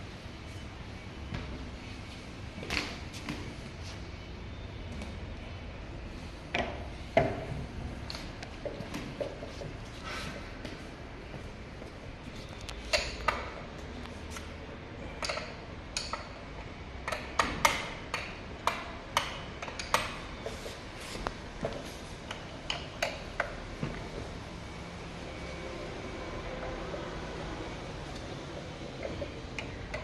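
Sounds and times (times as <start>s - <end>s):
metallic clicks of hand tools: 15.2s - 16.3s.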